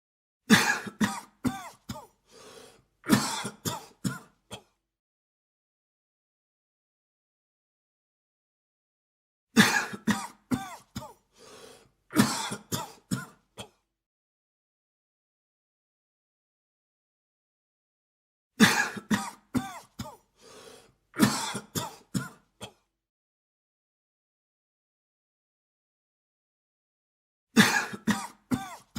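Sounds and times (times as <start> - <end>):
man coughing: 0.5 - 2.1, 3.1 - 4.7, 9.6 - 11.2, 12.1 - 13.8, 18.6 - 20.2, 21.2 - 22.9, 27.6 - 28.9
short breath: 2.3 - 2.9, 11.3 - 12.0, 20.4 - 21.0.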